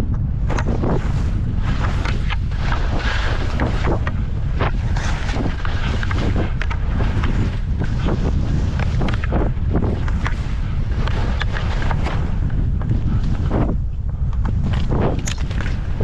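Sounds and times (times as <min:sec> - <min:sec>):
wind buffeting microphone: 0:00.0 - 0:16.0
ski edges scraping snow: 0:00.6 - 0:12.4.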